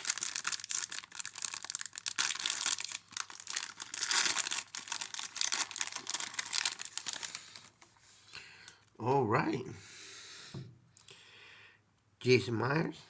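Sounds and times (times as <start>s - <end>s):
card pack wrapper tearing and crinkling: 0.0s - 7.8s.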